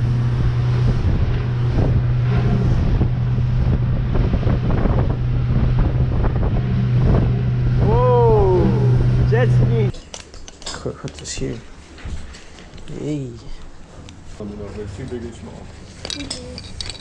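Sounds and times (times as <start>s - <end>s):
jet ski engine running: 0.0s - 9.9s
short rising and falling tone: 0.0s - 9.9s
wind buffeting microphone: 0.0s - 9.9s.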